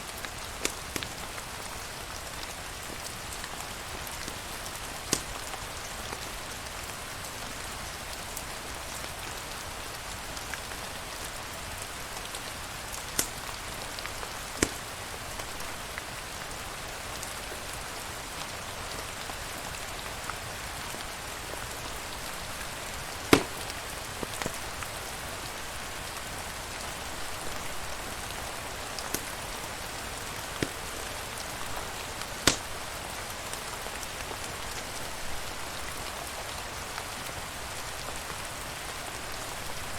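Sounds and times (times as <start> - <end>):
steady rain hiss: 0.0 - 39.9
sharp ticks or pops: 32.4 - 32.7.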